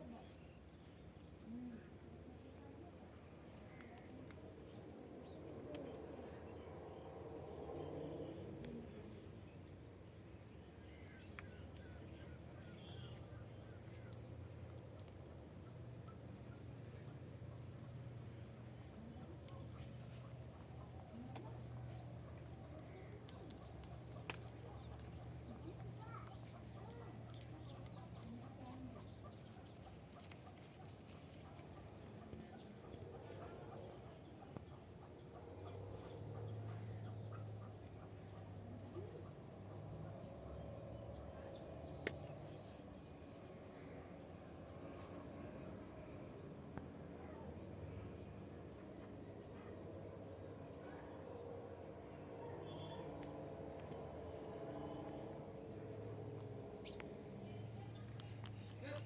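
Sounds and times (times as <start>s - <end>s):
cricket chirping: 0.0s - 59.0s
faint bird calls: 18.8s - 39.4s.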